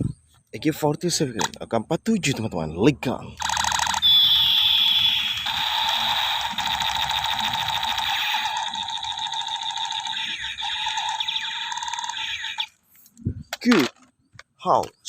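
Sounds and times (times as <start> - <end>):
toy gun electronic rattle: 3.4 - 12.7.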